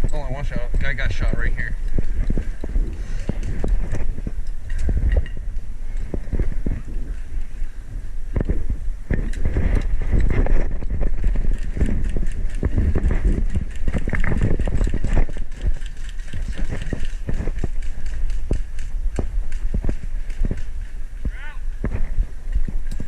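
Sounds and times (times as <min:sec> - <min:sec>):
gear rustling and bumping: 0:00.0 - 0:21.2
quick footsteps on ground: 0:08.4 - 0:23.0.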